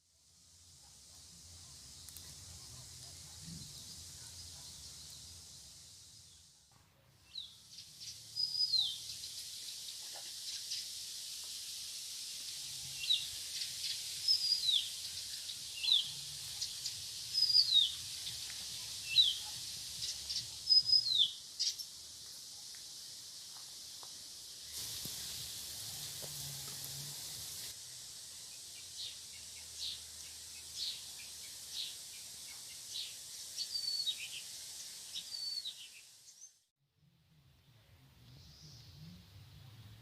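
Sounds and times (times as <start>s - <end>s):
high outdoor hiss: 0.0s - 36.7s, 37.3s - 40.0s
songbird whistling downward notes: 33.7s - 34.4s, 35.2s - 35.8s.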